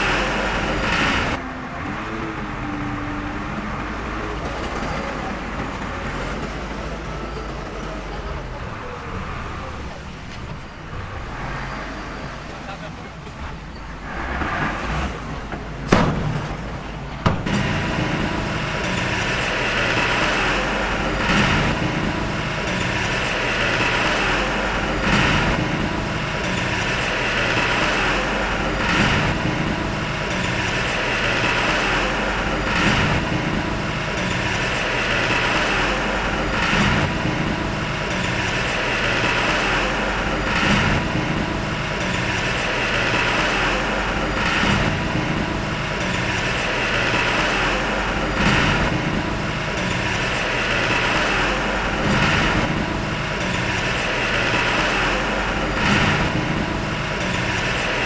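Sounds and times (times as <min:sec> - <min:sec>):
heavy machine engine running: 0:00.0 - 0:58.0
sharp knocks: 0:15.5 - 0:18.4.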